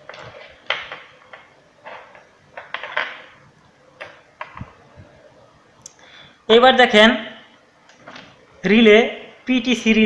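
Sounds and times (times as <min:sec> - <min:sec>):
small parts clinking and rattling: 0:00.0 - 0:03.4.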